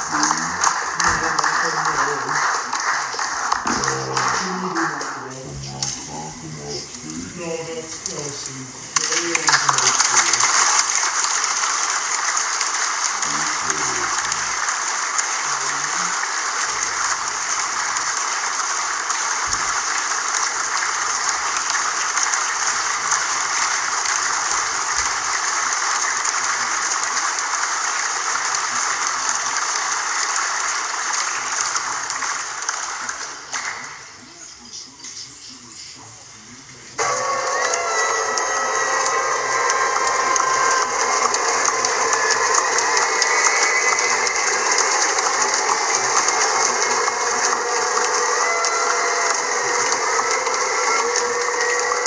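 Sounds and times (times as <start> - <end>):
crowd applauding: 0.0 - 35.7, 36.5 - 52.0.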